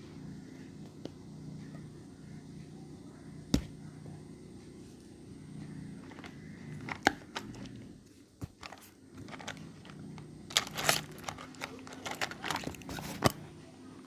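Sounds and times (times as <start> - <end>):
packaging crinkling: 8.5 - 13.4.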